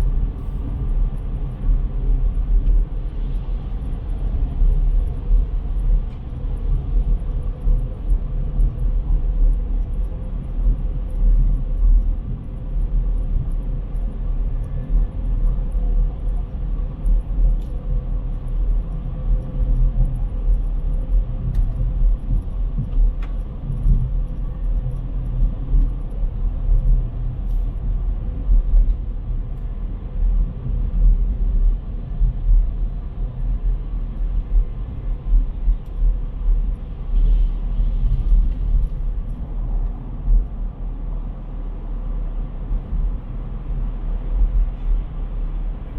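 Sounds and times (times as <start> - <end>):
city ambience rumble: 0.0 - 45.9.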